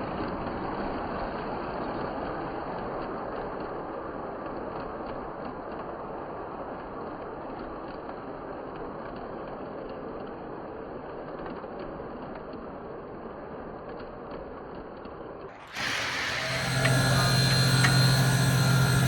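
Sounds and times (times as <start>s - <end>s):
toy train motor whir: 15.6s - 19.0s.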